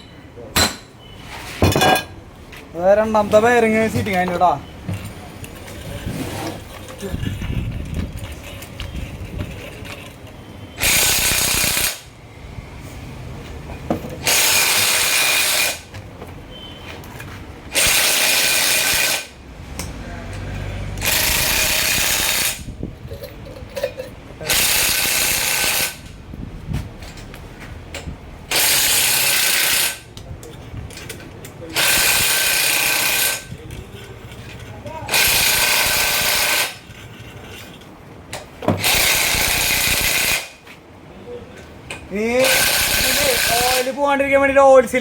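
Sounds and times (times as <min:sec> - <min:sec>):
power tool bursts: 0:10.8 - 0:12.2, 0:14.2 - 0:15.9, 0:17.7 - 0:19.4, 0:21.0 - 0:22.7, 0:24.4 - 0:26.1, 0:28.5 - 0:30.1, 0:31.7 - 0:33.5, 0:35.1 - 0:36.8, 0:38.8 - 0:40.6, 0:42.4 - 0:44.0.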